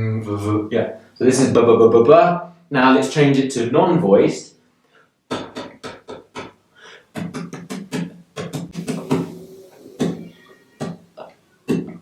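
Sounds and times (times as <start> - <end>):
man making breathy p sounds: 5.3 - 11.0.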